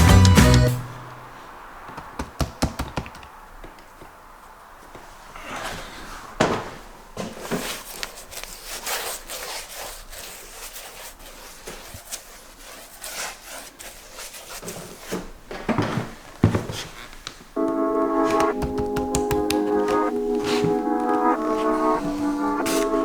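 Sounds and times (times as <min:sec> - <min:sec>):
sharp knocks: 0:01.9 - 0:03.3, 0:18.3 - 0:20.1.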